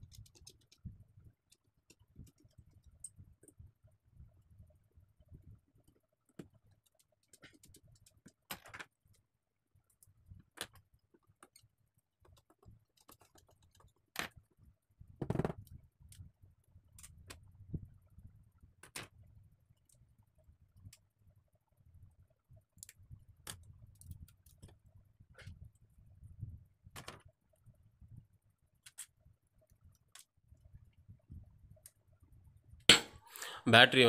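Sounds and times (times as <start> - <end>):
small tools clicking on smartphone: 0.0 - 0.9.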